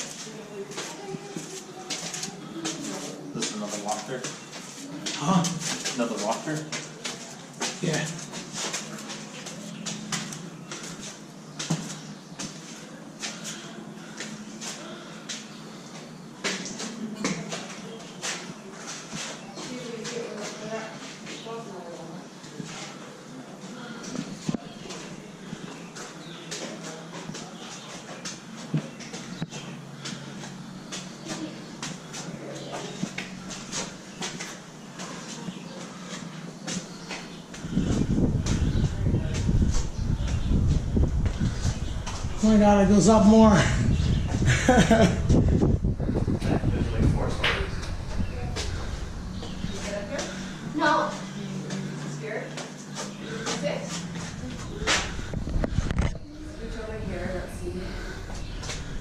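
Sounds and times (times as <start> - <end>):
footsteps on stone stairs: 0.0 - 20.6, 24.1 - 42.4
steady low hum: 0.0 - 59.0
loud low rumble: 37.4 - 52.0, 53.1 - 59.0.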